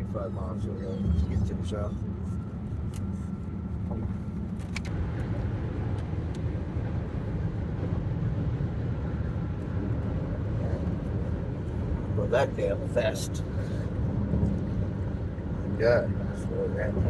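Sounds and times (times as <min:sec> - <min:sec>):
engine and road rumble: 0:00.0 - 0:17.0.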